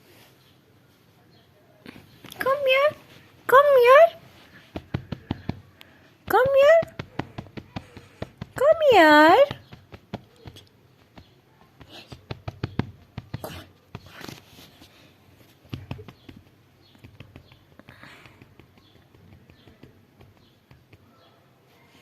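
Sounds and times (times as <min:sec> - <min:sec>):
paws pattering on floor: 0:04.1 - 0:08.8.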